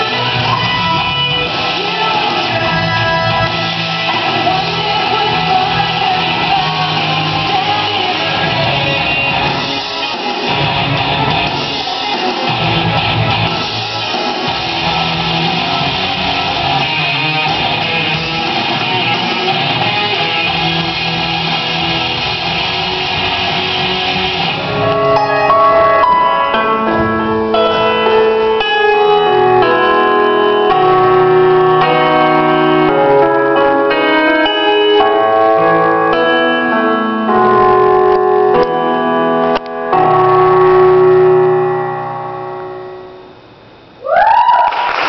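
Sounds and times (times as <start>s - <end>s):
piano music: 0.0s - 43.5s
crowd cheering: 44.0s - 45.0s.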